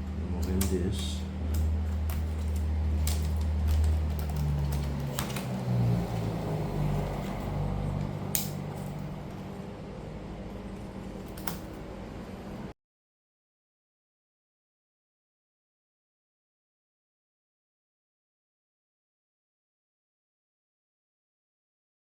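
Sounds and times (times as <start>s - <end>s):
steady low hum: 0.0s - 12.8s.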